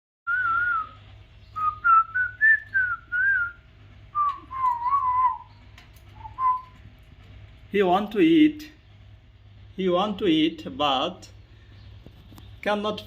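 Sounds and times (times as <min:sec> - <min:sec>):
parrot whistling: 0:00.3 - 0:01.0, 0:01.6 - 0:03.6, 0:06.2 - 0:06.8.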